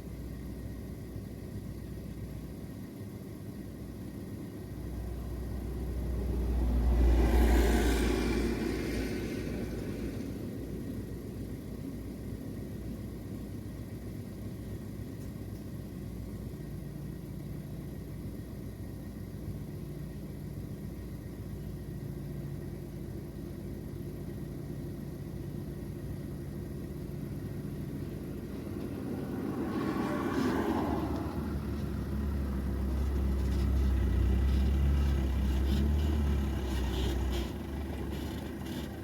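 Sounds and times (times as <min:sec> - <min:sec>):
car engine running: 0:09.5 - 0:39.0.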